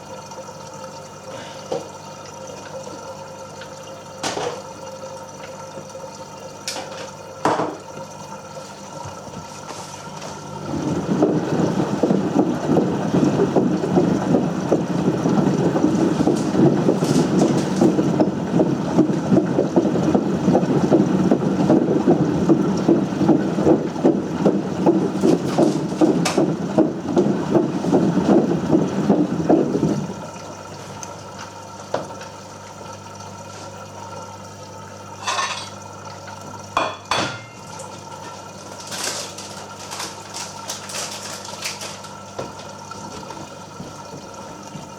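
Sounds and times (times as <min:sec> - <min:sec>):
potatoes clattering in washing machine: 0:04.2 - 0:04.7, 0:06.6 - 0:08.0, 0:08.6 - 0:31.2, 0:35.2 - 0:35.8, 0:36.5 - 0:44.9.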